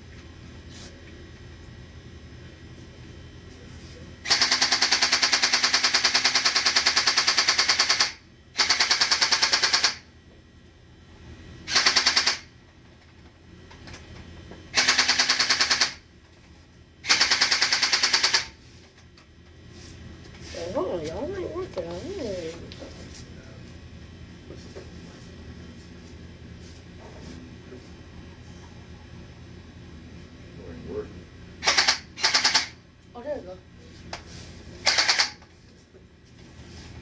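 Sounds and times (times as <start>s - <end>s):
gel blaster firing full auto: 4.3s - 10.0s, 11.7s - 12.5s, 14.8s - 16.0s, 17.0s - 18.5s, 31.6s - 32.8s, 34.8s - 35.4s.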